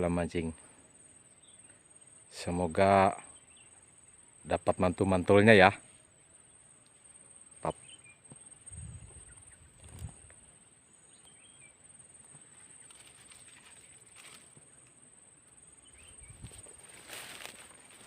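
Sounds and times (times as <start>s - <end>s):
high-pitched insect drone: 6.4s - 18.0s
bird calls: 7.6s - 10.3s, 11.0s - 14.6s, 15.8s - 18.0s
soft thumps of footsteps: 16.3s - 18.0s.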